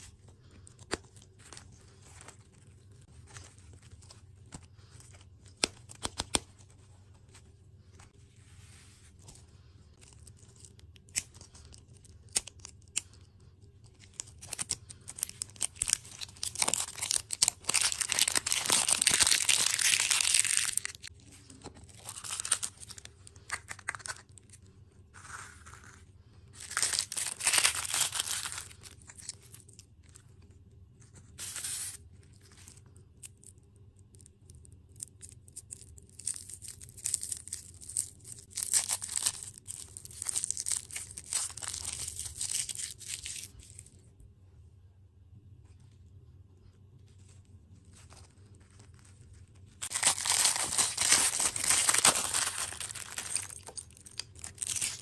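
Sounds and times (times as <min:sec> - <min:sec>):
food packaging crinkling: 0:13.9 - 0:26.0, 0:26.6 - 0:30.2, 0:35.0 - 0:43.9, 0:47.9 - 0:55.0.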